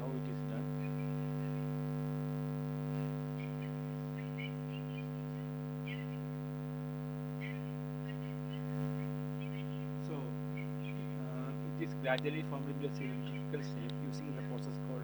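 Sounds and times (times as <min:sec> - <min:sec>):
electrical mains hum: 0:00.0 - 0:15.0
faint high chirps: 0:02.9 - 0:06.4, 0:07.3 - 0:14.8.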